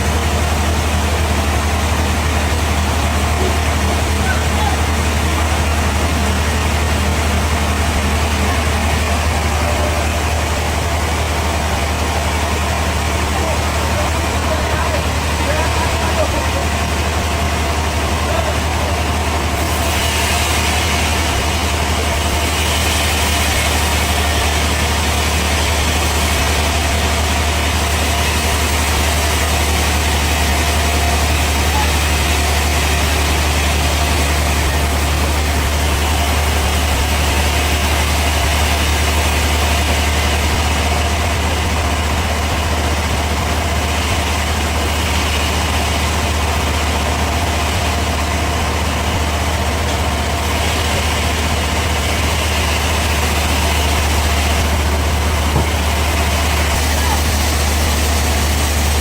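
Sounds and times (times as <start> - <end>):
sawmill machinery running: 0.0 - 59.0.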